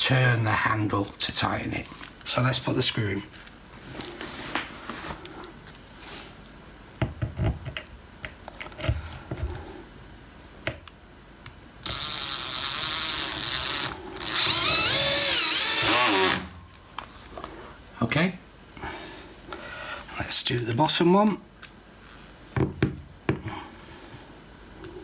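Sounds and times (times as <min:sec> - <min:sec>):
electric screwdriver motor whining: 0:11.8 - 0:16.6.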